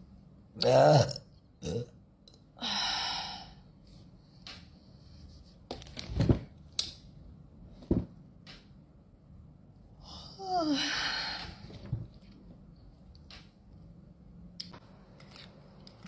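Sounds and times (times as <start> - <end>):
person burping: 0.6 - 2.0.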